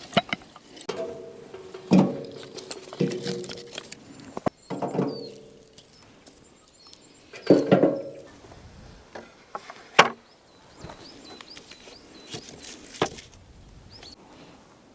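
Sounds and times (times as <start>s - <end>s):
heavy ringing knocks: 0.9s - 5.8s.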